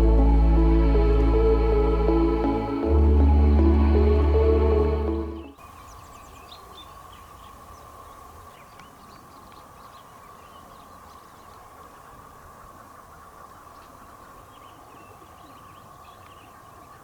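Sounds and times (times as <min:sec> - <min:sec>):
faint steady hum: 0:00.0 - 0:10.2.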